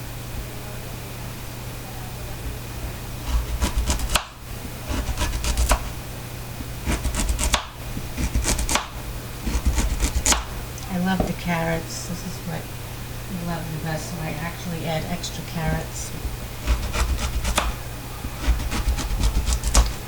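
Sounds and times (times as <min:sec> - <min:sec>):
knife chopping on cutting board: 0:03.3 - 0:04.3, 0:04.9 - 0:06.0, 0:06.8 - 0:10.5, 0:16.6 - 0:20.0.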